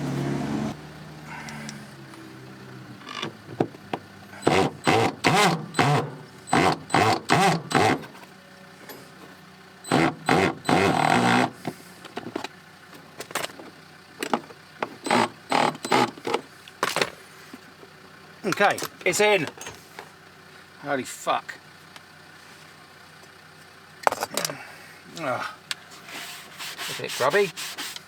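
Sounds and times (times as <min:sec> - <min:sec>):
power drill driving screws: 0:04.4 - 0:08.0, 0:09.9 - 0:11.5, 0:15.0 - 0:16.2.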